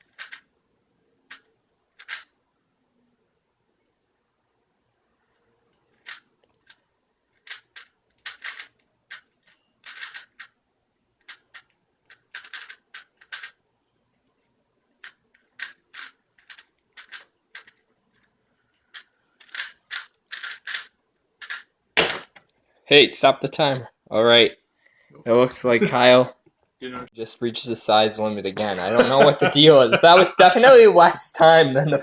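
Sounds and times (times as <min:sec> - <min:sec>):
puzzle cube plastic clicks: 0:00.0 - 0:00.5, 0:01.3 - 0:02.4, 0:05.3 - 0:10.6, 0:11.2 - 0:13.6, 0:15.0 - 0:22.4.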